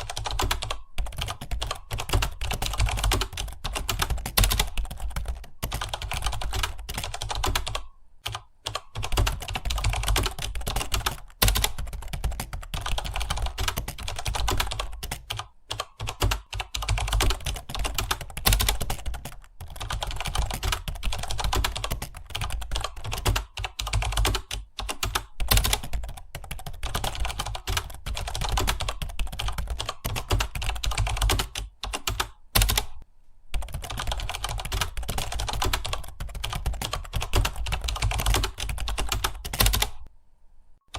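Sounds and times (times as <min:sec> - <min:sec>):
fast keyboard typing: 0:00.0 - 0:40.1.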